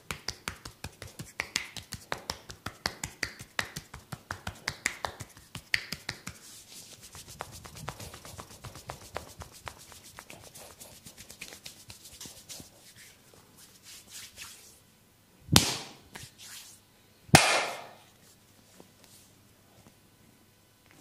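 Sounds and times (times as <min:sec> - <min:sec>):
light clicks of massage: 0:00.0 - 0:13.2
loud sharp slaps: 0:15.5 - 0:16.3, 0:17.3 - 0:18.0.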